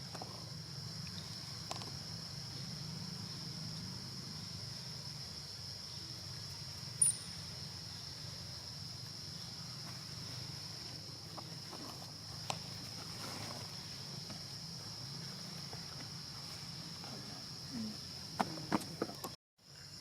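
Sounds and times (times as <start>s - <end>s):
insects droning: 0.0s - 20.0s
sharp high chirp: 7.0s - 7.4s.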